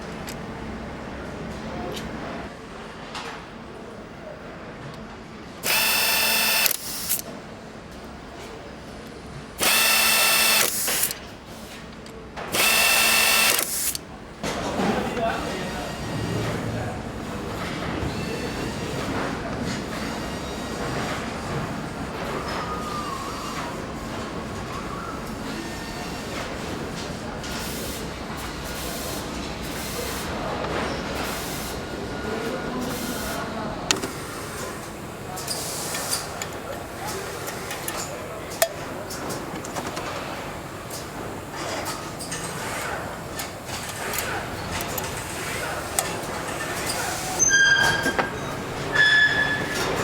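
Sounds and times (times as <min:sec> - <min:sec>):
power tool whining: 0:05.6 - 0:07.2, 0:09.6 - 0:11.2, 0:12.5 - 0:14.0
assembly line machinery din: 0:05.6 - 0:07.3, 0:09.6 - 0:11.2, 0:12.5 - 0:14.1
sharp metallic click: 0:12.6 - 0:14.0.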